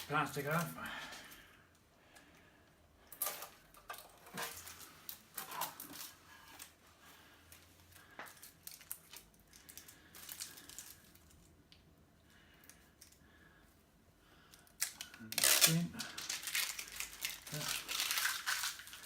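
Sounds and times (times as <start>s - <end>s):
plastic film crinkling: 0.0s - 1.0s, 3.8s - 6.8s, 7.5s - 11.5s, 14.5s - 19.0s.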